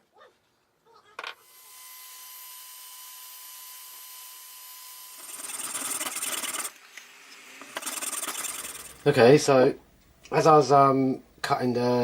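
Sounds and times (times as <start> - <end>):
rasping strokes on wood: 5.2 - 6.7, 7.7 - 9.1.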